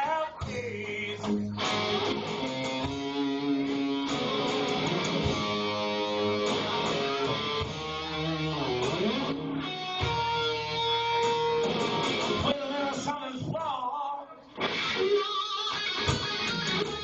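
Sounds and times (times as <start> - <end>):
bass line: 0.0 - 13.0
blues band playing: 0.0 - 13.2, 14.6 - 17.0
electric guitar: 0.0 - 13.6, 14.4 - 17.0.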